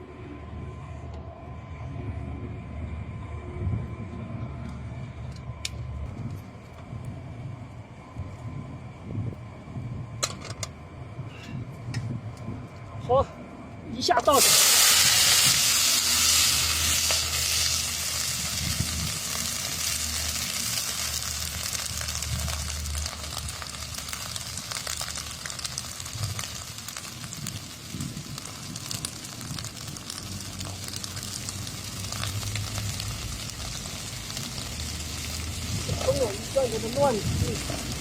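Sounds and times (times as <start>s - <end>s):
low hum: 0.0s - 36.0s
beans sizzling in hot oil: 14.3s - 38.0s.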